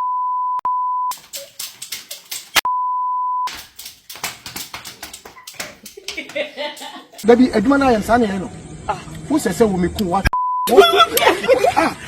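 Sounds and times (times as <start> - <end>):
censor bleep: 0.0 - 1.1, 2.7 - 3.5, 10.4 - 10.7
irregular clicks and knocks: 1.1 - 2.7, 3.5 - 7.2.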